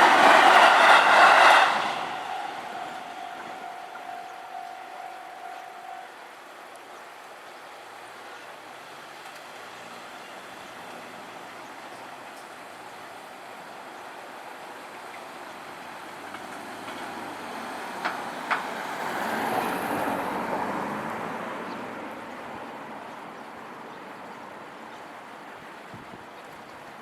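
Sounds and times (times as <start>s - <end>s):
road vehicle passing: 0.0s - 6.0s.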